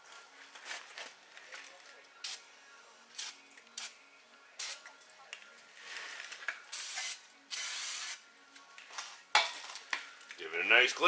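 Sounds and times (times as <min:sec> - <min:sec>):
spray hissing: 0:06.8 - 0:08.2.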